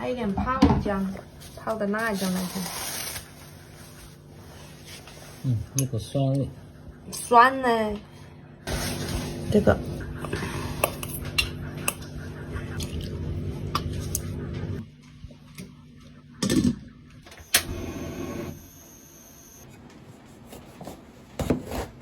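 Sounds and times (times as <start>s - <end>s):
steady low hum: 6.5s - 19.7s.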